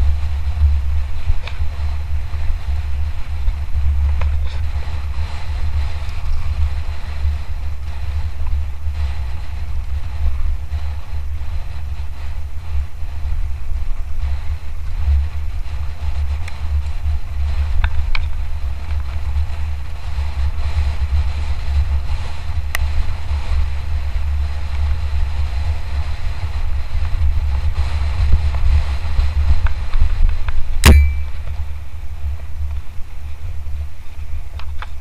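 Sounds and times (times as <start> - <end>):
bike clicks and rattles: 0.0 - 35.0
wind rushing over microphone: 0.0 - 35.0.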